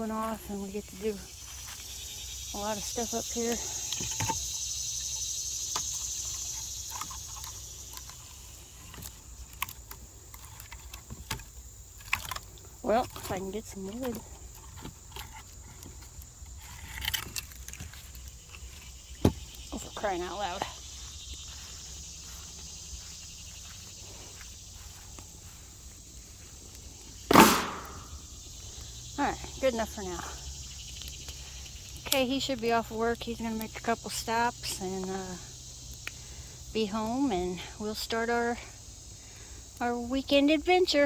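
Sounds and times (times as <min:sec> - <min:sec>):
light clicks and crackles: 0:00.0 - 0:19.8, 0:30.9 - 0:35.2, 0:35.8 - 0:36.4
high insect buzz: 0:00.0 - 0:41.0.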